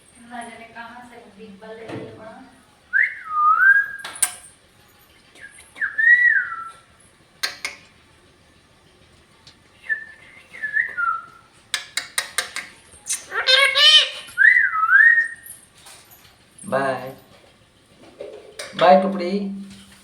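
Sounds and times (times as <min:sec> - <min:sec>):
parrot whistling: 0:02.9 - 0:04.4, 0:05.4 - 0:07.8, 0:09.8 - 0:11.5, 0:12.6 - 0:15.5
sharp clicks: 0:07.4 - 0:07.9, 0:11.7 - 0:13.3.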